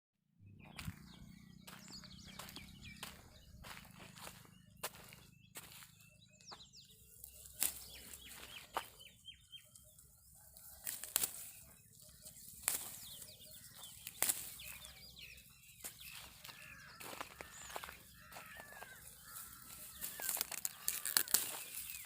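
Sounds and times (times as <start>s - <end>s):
sharp snaps and rustling: 10.8s - 11.5s, 20.0s - 22.0s.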